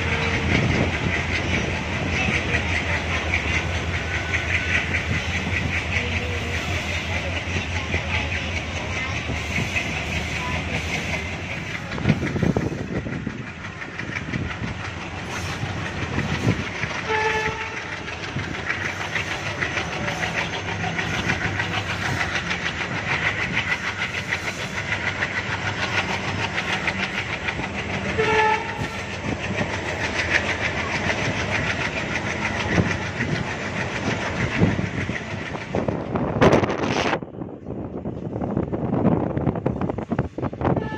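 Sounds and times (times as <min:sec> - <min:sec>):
train wheels clattering: 0:00.0 - 0:37.1
train horn toots: 0:17.0 - 0:18.0, 0:28.0 - 0:29.0, 0:40.7 - 0:40.9.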